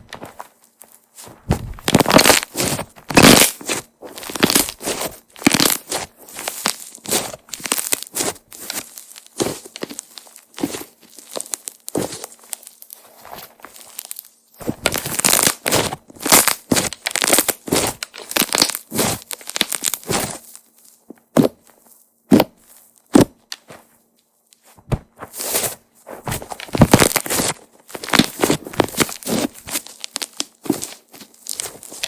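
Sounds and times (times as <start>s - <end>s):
slime crackling and popping: 1.6s - 21.0s, 26.5s - 32.0s.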